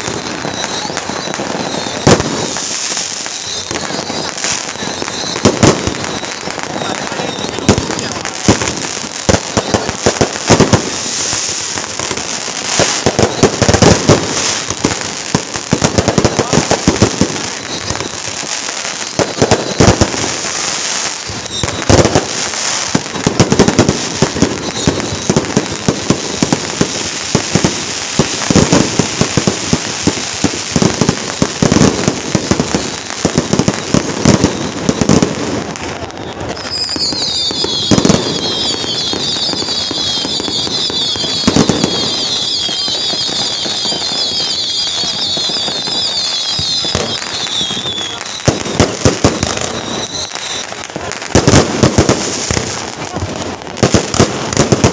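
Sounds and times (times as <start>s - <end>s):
firecrackers crackling: 0.0s - 54.9s
shrill warbling whistle: 0.2s - 2.2s, 3.3s - 8.0s, 21.3s - 21.9s, 36.2s - 48.5s, 49.6s - 50.8s.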